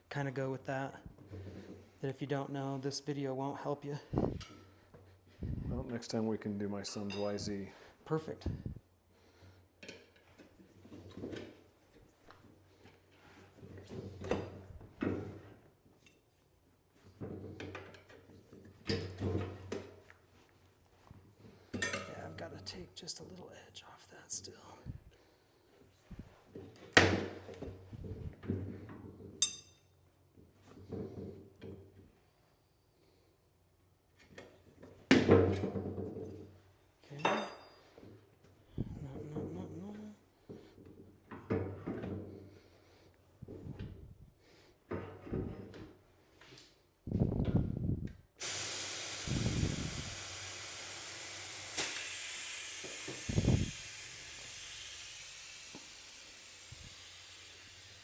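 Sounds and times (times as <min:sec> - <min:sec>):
ringing metal clink: 0:29.4 - 0:29.8.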